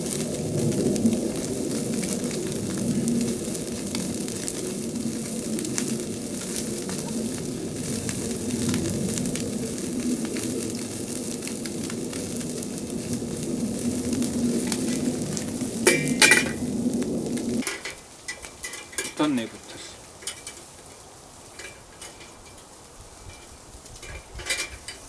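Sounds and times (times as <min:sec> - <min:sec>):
embers crackling: 0:00.0 - 0:25.0
fish sizzling on a grill: 0:00.0 - 0:25.0
sharp clatter: 0:15.8 - 0:16.7.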